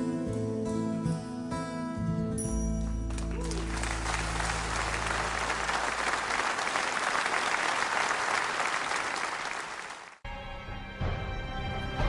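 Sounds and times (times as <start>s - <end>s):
audience applauding: 3.1s - 10.2s.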